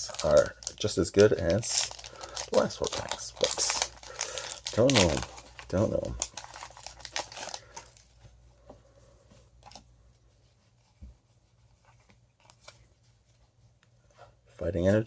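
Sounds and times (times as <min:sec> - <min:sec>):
foil wrapper crinkling and tearing: 0:00.0 - 0:08.1.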